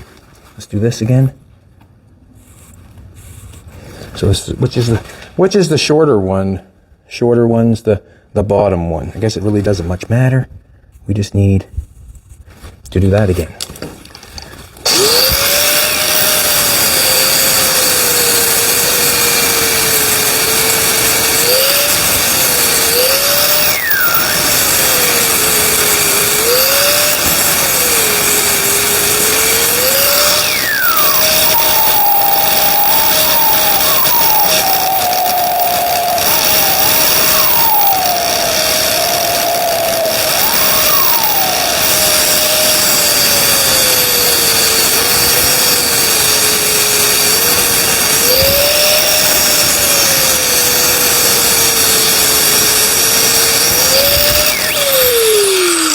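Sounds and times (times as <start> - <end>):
angle grinder cutting metal: 14.8 - 55.9
grinder disc squealing: 14.8 - 55.9.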